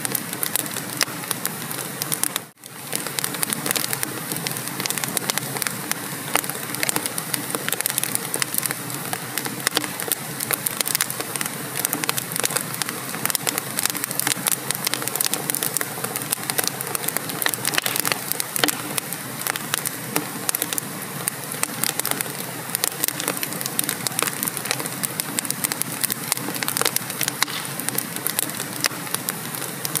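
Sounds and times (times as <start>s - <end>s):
fire hiss: 0.0s - 30.0s
wood fire crackling: 0.0s - 30.0s.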